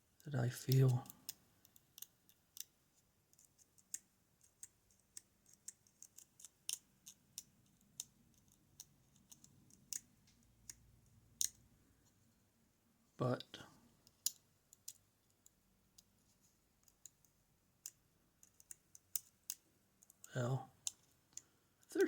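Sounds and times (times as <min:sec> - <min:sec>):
small metal lock parts clicking: 0:00.7 - 0:02.7, 0:03.3 - 0:10.8, 0:11.4 - 0:11.6, 0:14.0 - 0:16.1.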